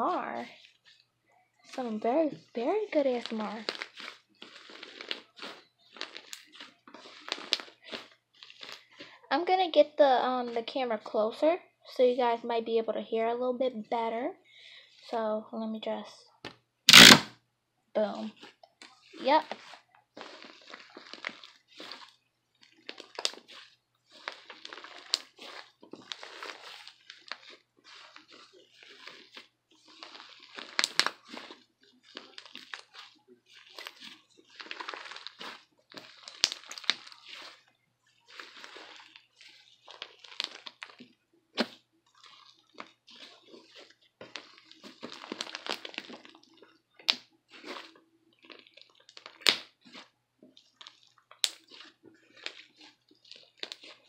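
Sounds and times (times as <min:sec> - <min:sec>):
slime squished by hand: 0:01.7 - 0:09.0, 0:16.9 - 0:17.3, 0:18.2 - 0:54.0
sharp slime pops: 0:16.9 - 0:17.3, 0:49.4 - 0:49.8.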